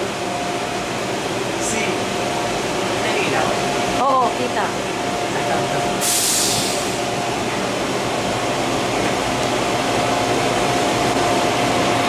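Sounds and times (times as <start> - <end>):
amusement ride rushing rumble: 0.0 - 12.0
brief hiss: 6.0 - 7.0.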